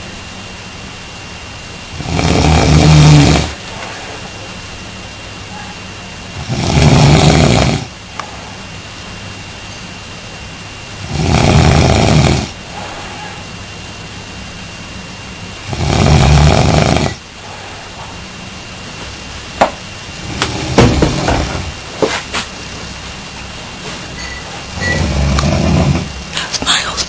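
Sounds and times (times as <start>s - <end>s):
man snoring loudly: 1.9s - 3.6s, 6.4s - 7.9s, 11.0s - 12.6s, 15.7s - 17.2s, 24.8s - 26.1s.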